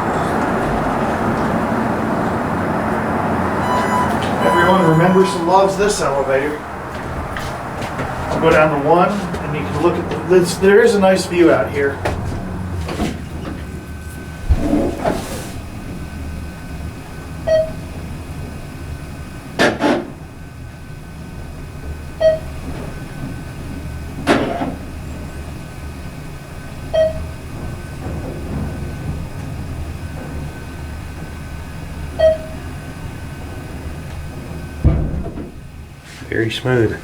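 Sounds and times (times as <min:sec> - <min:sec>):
elevator hum: 0:00.0 - 0:37.0
short beep: 0:03.6 - 0:06.7.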